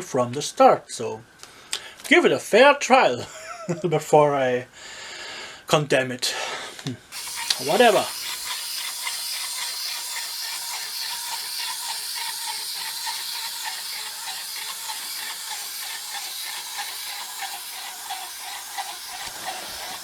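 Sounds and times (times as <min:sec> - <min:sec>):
breathing inside a mask: 0:04.8 - 0:05.7.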